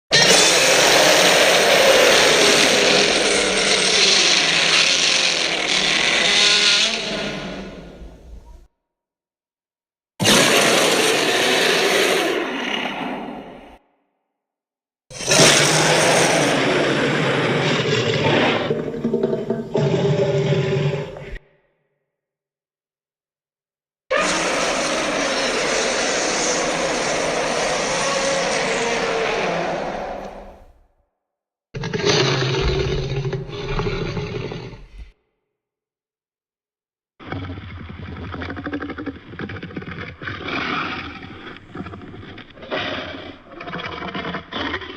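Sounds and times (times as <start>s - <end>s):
rough monster roar: 0.1s - 8.4s, 10.2s - 13.8s, 15.1s - 21.4s, 24.1s - 30.8s, 31.8s - 35.0s.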